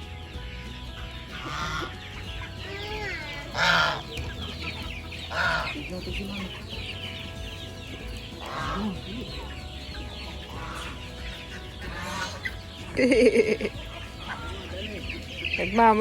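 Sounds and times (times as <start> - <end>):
high chirping calls: 0.0 - 16.0
poultry clucking: 0.0 - 16.0
loud squawk: 1.3 - 16.0.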